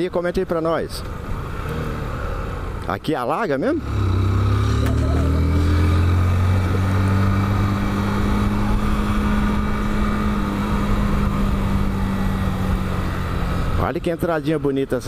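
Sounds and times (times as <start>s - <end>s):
wind and road noise: 0.0s - 15.0s
motorcycle engine running: 3.8s - 13.8s.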